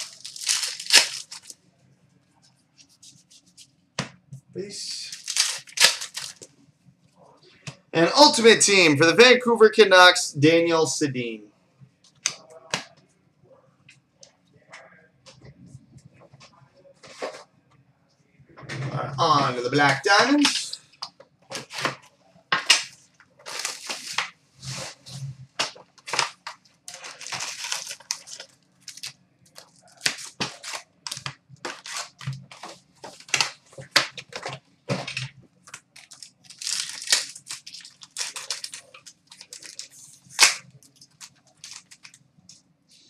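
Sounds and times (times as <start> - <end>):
packaging crinkling and tearing: 0.0 - 1.6, 5.0 - 6.5, 22.7 - 25.0, 25.6 - 42.2.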